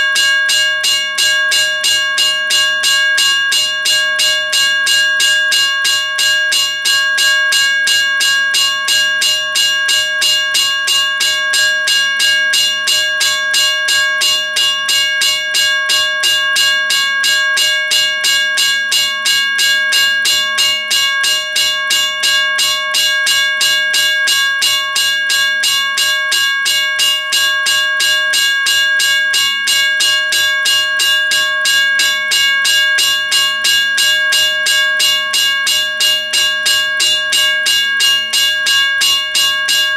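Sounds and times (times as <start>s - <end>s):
railroad crossing bell ringing: 0.0s - 39.9s.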